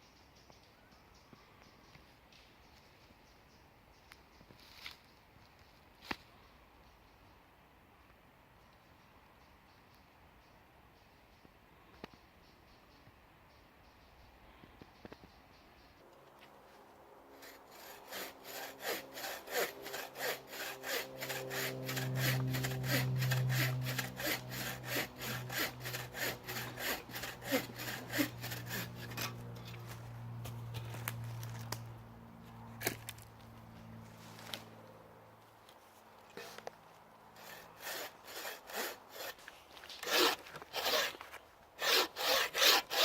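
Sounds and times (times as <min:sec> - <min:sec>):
hand saw cutting wood: 0:17.4 - 0:30.0, 0:37.4 - 0:43.0.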